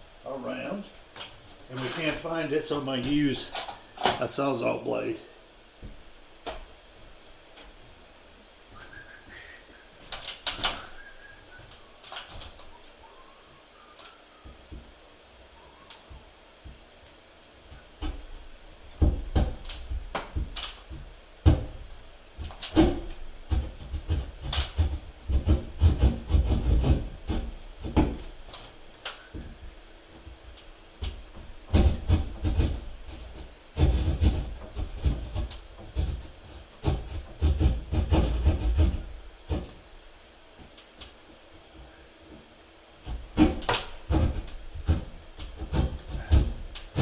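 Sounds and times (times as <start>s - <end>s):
hand saw cutting through wall: 22.4s - 28.3s, 31.1s - 39.8s, 43.0s - 47.0s.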